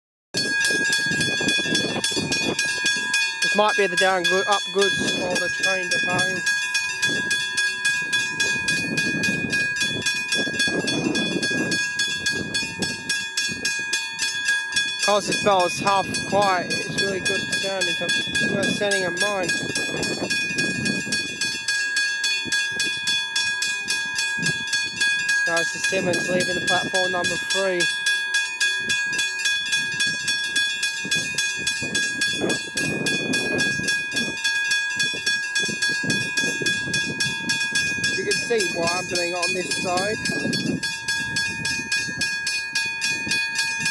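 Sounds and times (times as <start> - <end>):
level crossing bell ringing: 0.4 - 43.9
train running noise: 15.0 - 21.7, 23.4 - 28.0, 35.6 - 43.9.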